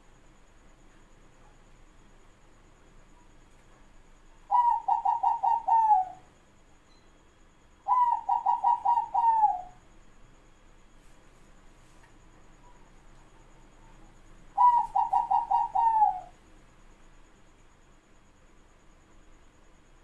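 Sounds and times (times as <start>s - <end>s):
dove cooing: 4.5s - 6.3s, 7.9s - 9.8s, 14.5s - 16.4s.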